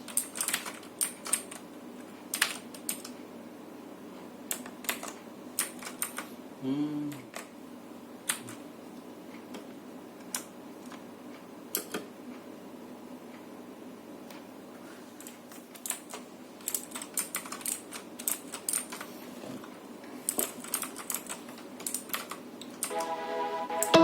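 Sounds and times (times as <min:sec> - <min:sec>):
music: 0:22.9 - 0:24.0.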